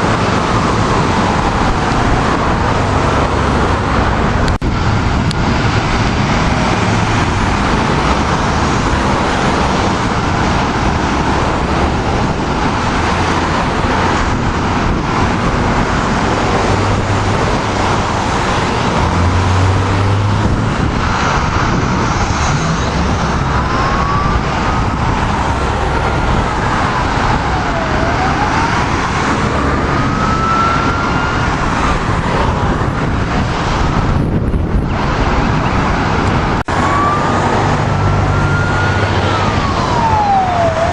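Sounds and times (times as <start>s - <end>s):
faint emergency siren wailing: 0.0s - 4.2s, 20.8s - 33.8s, 36.6s - 40.9s
road traffic noise: 0.0s - 40.9s.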